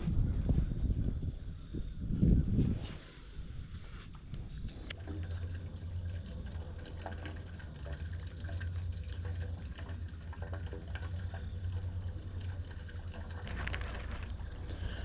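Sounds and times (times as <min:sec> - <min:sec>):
low steady hum: 0:00.0 - 0:15.0
water splashing and trickling: 0:04.4 - 0:15.0.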